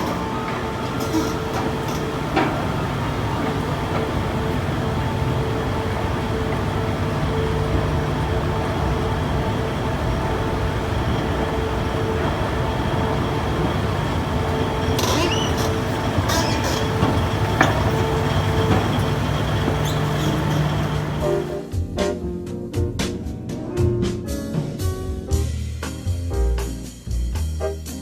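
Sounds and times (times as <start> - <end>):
escalator sharp high squeaks: 0.0 - 21.6
escalator mechanical drone: 0.0 - 21.7.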